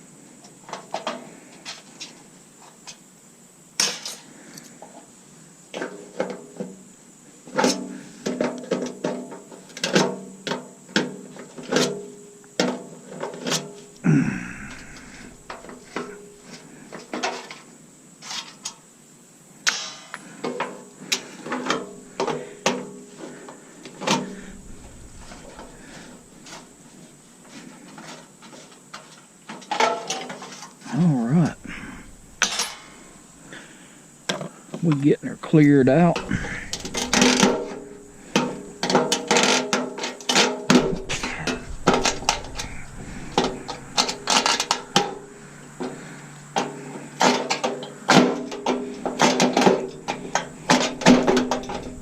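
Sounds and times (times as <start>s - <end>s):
metal scrape: 24.1s - 27.1s, 31.4s - 33.8s, 36.0s - 39.5s, 40.7s - 46.4s, 48.8s - 52.0s
metal clanks and knocks: 31.4s - 33.6s, 36.0s - 52.0s.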